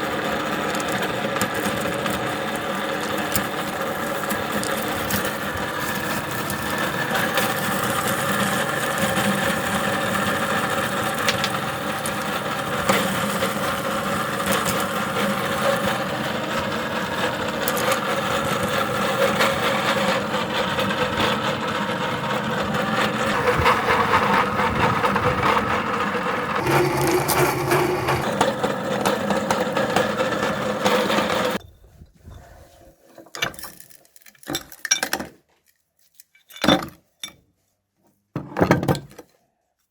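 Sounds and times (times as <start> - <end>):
electric meat grinder running: 0.0 - 31.6
hard candy cracking: 0.5 - 19.0, 26.6 - 29.2.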